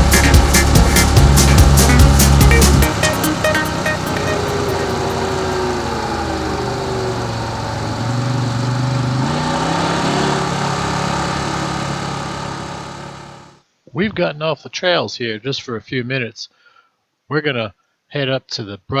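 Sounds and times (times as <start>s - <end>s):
utility vehicle engine running: 0.0s - 13.6s.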